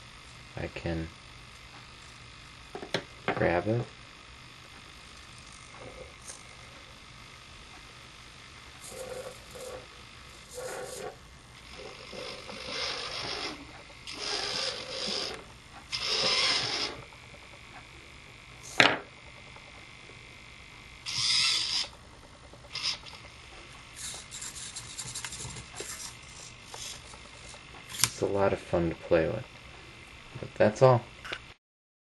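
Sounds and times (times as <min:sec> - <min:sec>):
servos whirring: 0:08.7 - 0:18.8, 0:21.0 - 0:22.0, 0:22.7 - 0:28.2
servos jittery chatter: 0:08.8 - 0:17.6, 0:21.1 - 0:23.3.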